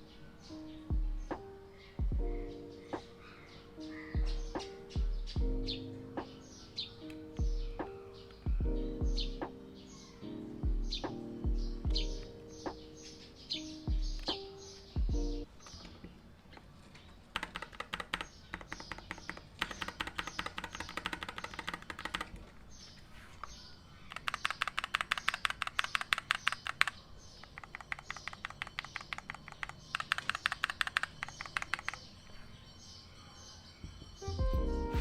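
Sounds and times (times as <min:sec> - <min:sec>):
mechanical keyboard typing: 0:17.3 - 0:22.6, 0:24.0 - 0:32.2.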